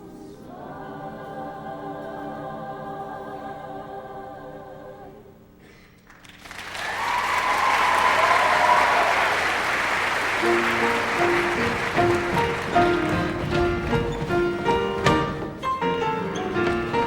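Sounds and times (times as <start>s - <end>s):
choir singing chord: 0.0s - 5.3s
audience applause and cheering: 6.1s - 13.6s.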